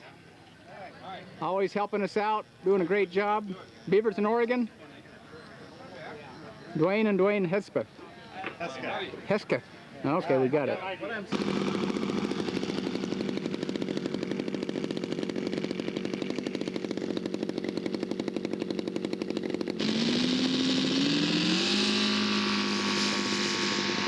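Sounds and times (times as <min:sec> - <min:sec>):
model airplane engine running: 0:11.1 - 0:24.0.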